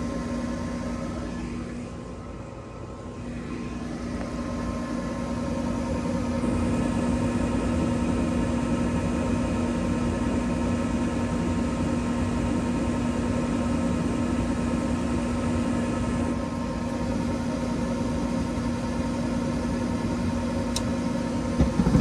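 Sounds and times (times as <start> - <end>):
furnace motor humming: 0.0 - 8.3, 15.4 - 22.0.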